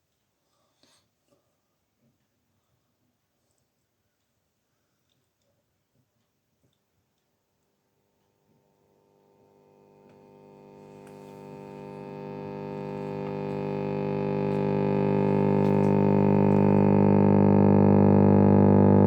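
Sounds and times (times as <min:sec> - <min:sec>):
radio speaker humming: 0:08.9 - 0:19.0.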